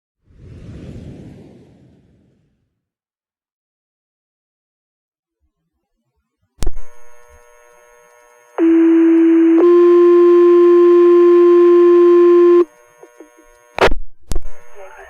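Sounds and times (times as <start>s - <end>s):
radio channel click: 6.6s - 7.5s, 13.0s - 15.0s
two-tone radio paging tones: 8.5s - 15.0s.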